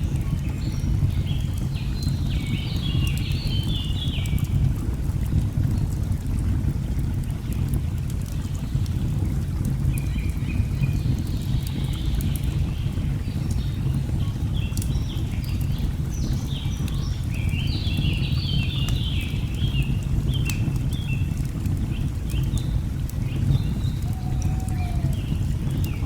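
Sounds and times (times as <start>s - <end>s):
log fire crackling: 0.0s - 26.0s
falling water rushing: 22.9s - 26.0s
birds chirping and trilling: 23.6s - 26.0s.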